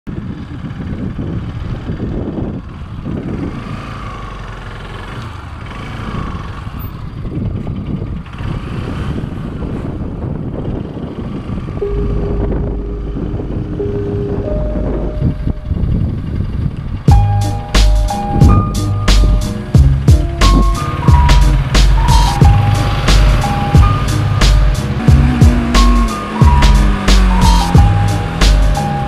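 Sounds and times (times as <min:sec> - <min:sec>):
motorcycle engine revving: 0:00.1 - 0:29.0
steady held tones: 0:11.8 - 0:16.1.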